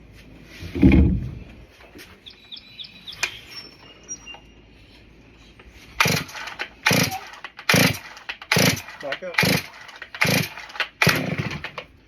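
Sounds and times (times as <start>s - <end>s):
faint bird chirps: 2.2s - 5.6s
chainsaw starter cord pulls: 6.0s - 12.0s.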